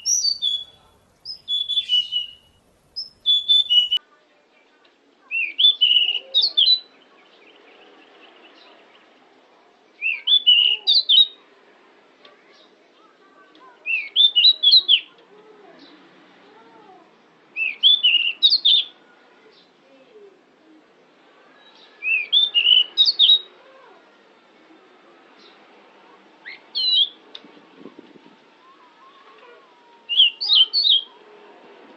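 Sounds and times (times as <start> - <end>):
bird singing chirpy notes: 0.0 - 4.0, 5.3 - 9.1, 10.0 - 11.4, 13.8 - 15.1, 17.6 - 19.7, 21.7 - 23.5, 26.4 - 27.2, 30.1 - 31.2
bird singing high notes: 0.0 - 4.0, 22.0 - 23.5
bird whistled note: 1.4 - 2.6.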